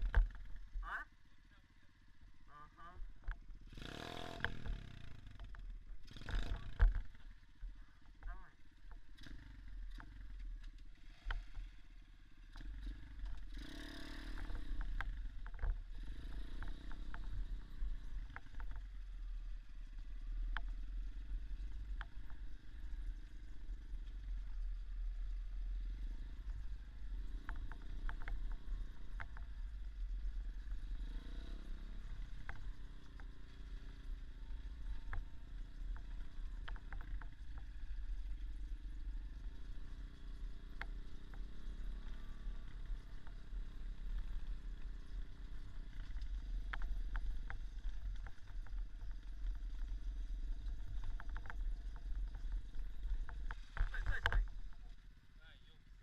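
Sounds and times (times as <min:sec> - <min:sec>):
bike rattling over rough ground: 0:00.0 - 0:01.0, 0:03.2 - 0:56.0
dirt bike engine revving: 0:03.6 - 0:05.4, 0:06.0 - 0:06.9, 0:12.6 - 0:15.2.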